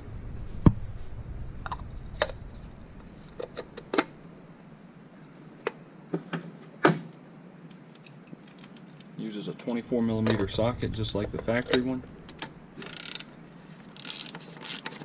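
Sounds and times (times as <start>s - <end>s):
metal parts clicking and knocking: 10.2s - 15.0s.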